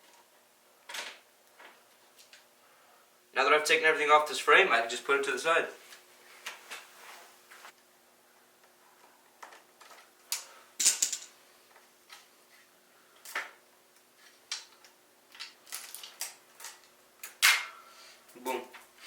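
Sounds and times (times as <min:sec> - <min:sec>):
bicycle parts and tools clattering: 0:09.4 - 0:19.0.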